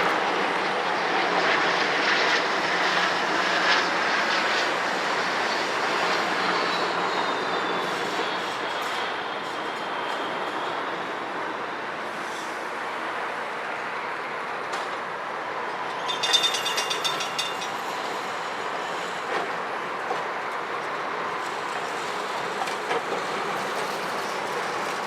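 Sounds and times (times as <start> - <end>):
streetcar running noise: 0.0 - 25.0
metallic rattling clatter: 16.0 - 17.8.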